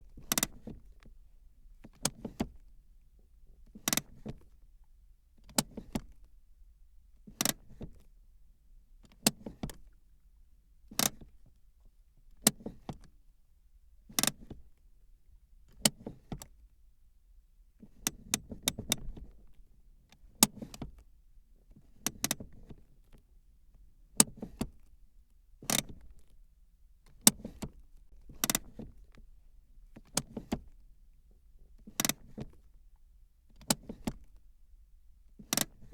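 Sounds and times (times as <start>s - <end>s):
handbrake ratchet clicking: 22.0s - 23.2s, 25.6s - 26.3s, 28.4s - 29.0s, 31.8s - 32.6s, 33.6s - 34.4s, 35.4s - 35.9s.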